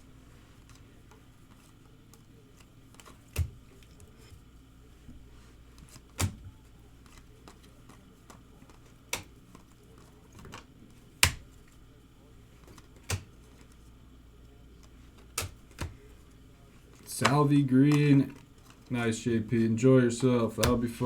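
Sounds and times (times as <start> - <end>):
cards clicking and rustling: 0.6 - 4.3, 7.0 - 11.8, 12.6 - 13.8, 14.7 - 21.0.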